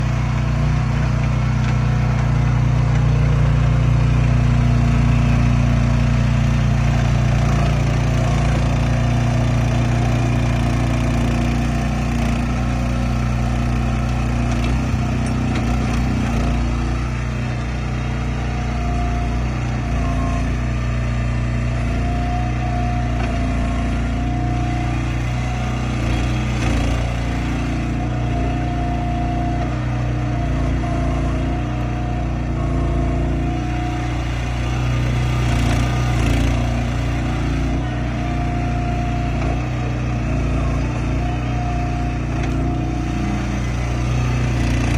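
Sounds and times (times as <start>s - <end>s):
excavator diesel engine running: 0.0s - 44.9s.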